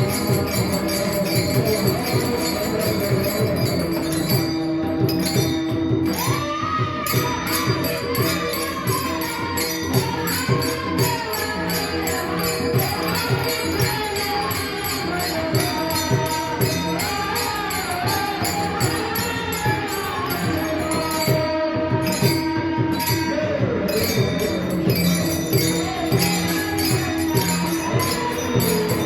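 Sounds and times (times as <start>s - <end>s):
hand cymbals jingling: 0.0s - 29.0s
person singing devotional melody: 0.0s - 29.0s.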